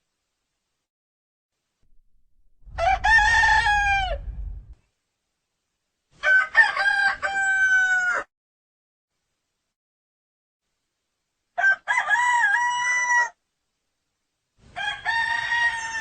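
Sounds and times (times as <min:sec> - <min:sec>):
rooster crowing: 0:02.6 - 0:04.7, 0:06.2 - 0:08.3, 0:11.6 - 0:13.4, 0:14.8 - 0:16.0.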